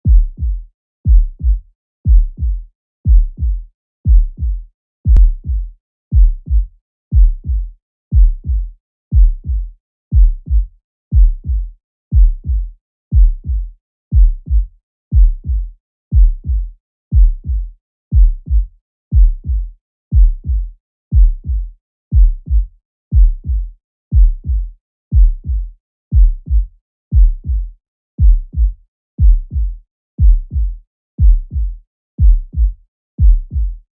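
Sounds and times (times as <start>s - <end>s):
heartbeat through stethoscope: 0.0s - 33.9s.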